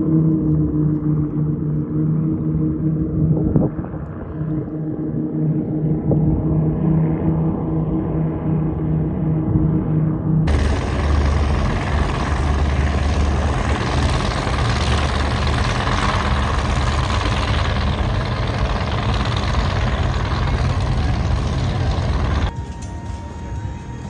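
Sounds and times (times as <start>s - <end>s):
powerboat engine running: 10.5s - 22.5s.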